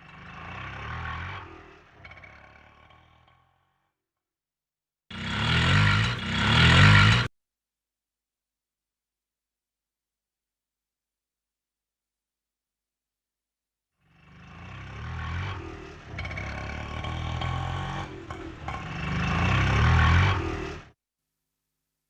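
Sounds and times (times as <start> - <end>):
auto rickshaw engine running: 0.0 - 3.6, 5.1 - 7.3, 14.1 - 21.0.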